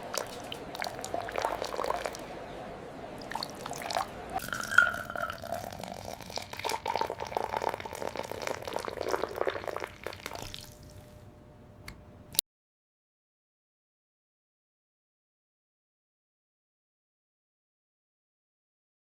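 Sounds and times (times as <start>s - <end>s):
wet crackling clicks: 0.0s - 4.4s, 11.8s - 12.4s
juice pouring and dripping: 0.0s - 11.1s.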